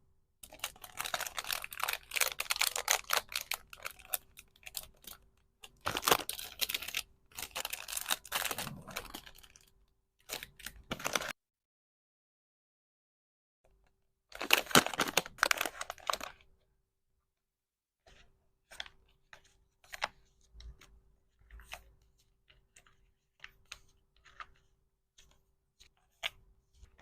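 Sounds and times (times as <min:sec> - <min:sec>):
packaging tearing and crinkling: 0:00.4 - 0:05.1, 0:05.8 - 0:09.5, 0:14.4 - 0:16.3.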